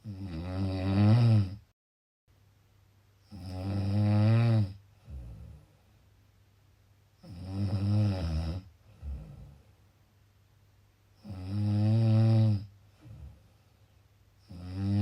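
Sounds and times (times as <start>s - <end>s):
person snoring: 0.0s - 1.6s, 3.3s - 5.7s, 11.2s - 13.4s, 14.4s - 15.0s
soft breath: 4.9s - 6.1s, 8.8s - 9.9s, 12.8s - 14.2s.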